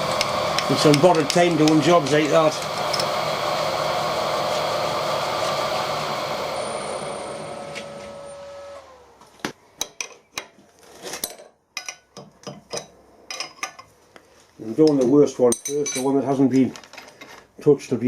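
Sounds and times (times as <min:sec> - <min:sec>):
milling machine cutting metal: 0:00.0 - 0:09.0
spindle running down whine: 0:00.0 - 0:09.2.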